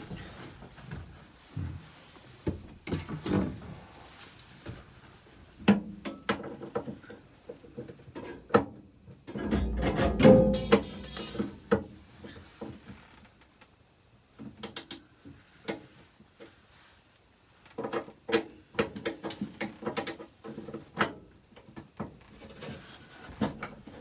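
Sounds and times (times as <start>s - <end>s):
hand tools clinking on metal: 9.4s - 11.8s.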